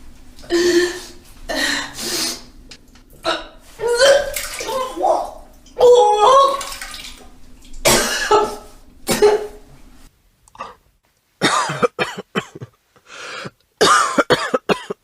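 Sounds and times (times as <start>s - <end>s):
person gagging and coughing: 7.8s - 9.6s, 11.4s - 12.8s, 13.8s - 15.0s
person retching and vomiting: 7.8s - 9.6s, 10.5s - 10.8s, 11.4s - 12.7s.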